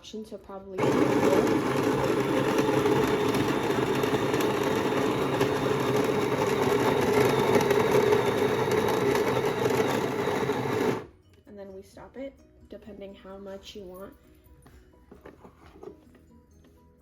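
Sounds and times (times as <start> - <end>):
coffee grinder running: 0.8 - 11.1.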